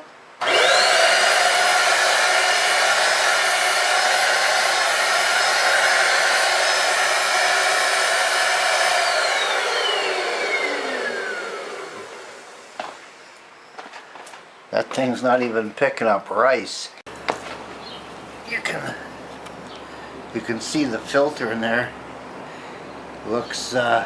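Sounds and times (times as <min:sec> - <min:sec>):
vacuum motor whining: 0:00.4 - 0:13.1.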